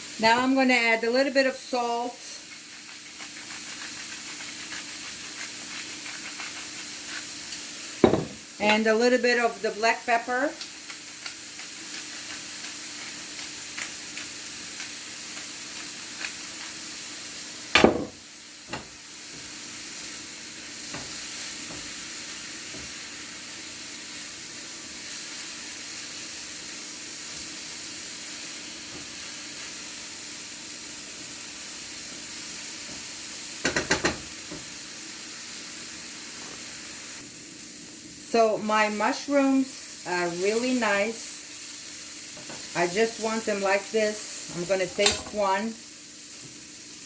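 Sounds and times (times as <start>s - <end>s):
vegetables sizzling in a frying pan: 0.0s - 47.0s
utensil knocking against pan: 8.0s - 8.4s, 17.8s - 18.9s.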